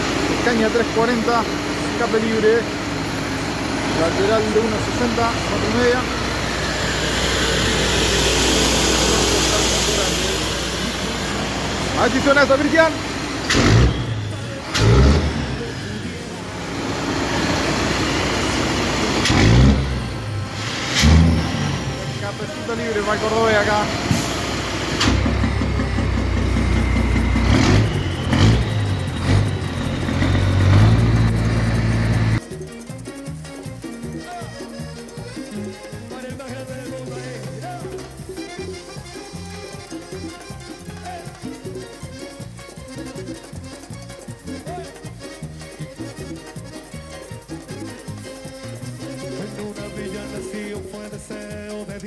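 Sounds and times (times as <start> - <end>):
truck diesel engine running: 0.0 - 32.4.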